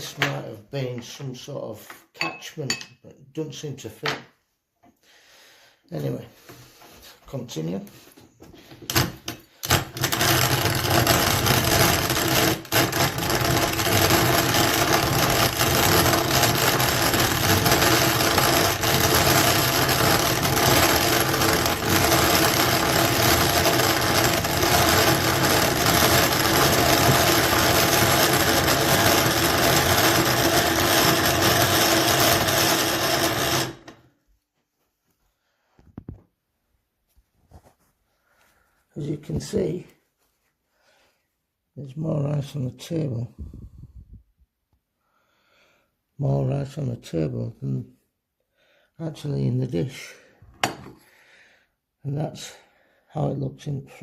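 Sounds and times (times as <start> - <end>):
grain grinder grinding rattle: 8.8 - 34.1.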